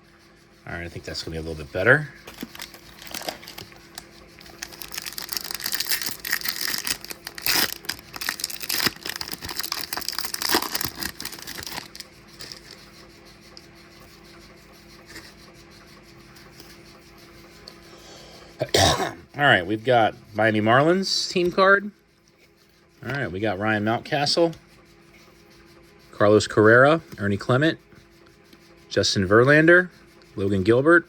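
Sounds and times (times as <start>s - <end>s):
foil wrapper tearing and crinkling: 2.3s - 12.7s.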